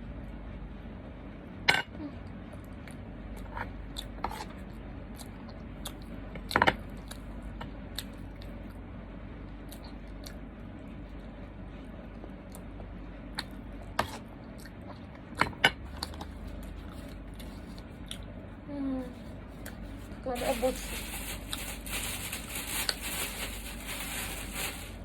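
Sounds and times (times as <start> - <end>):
steady low hum: 0.0 - 25.0
utensils clicking and clinking: 20.4 - 25.0.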